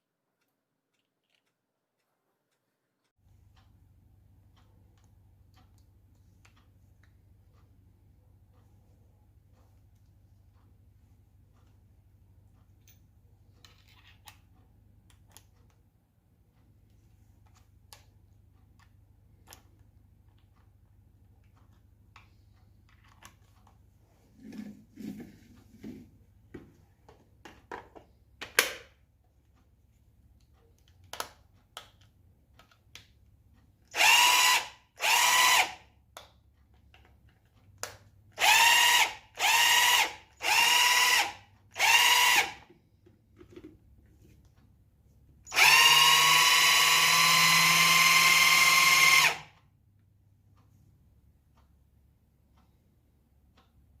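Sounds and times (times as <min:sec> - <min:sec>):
impact driver motor whining: 0:34.0 - 0:35.8, 0:38.4 - 0:42.6, 0:45.5 - 0:49.5.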